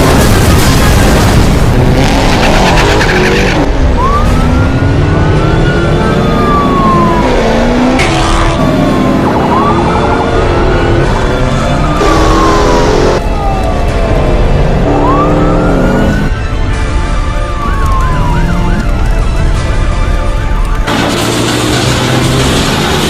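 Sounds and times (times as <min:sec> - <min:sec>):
car engines revving: 0:01.1 - 0:13.2, 0:14.0 - 0:16.3, 0:20.8 - 0:23.0
police sirens wailing: 0:02.0 - 0:23.0.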